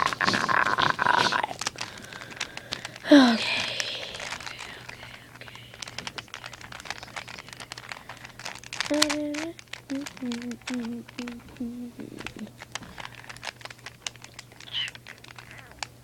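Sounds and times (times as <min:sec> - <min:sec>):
puzzle cube plastic clicks: 0:00.0 - 0:16.0.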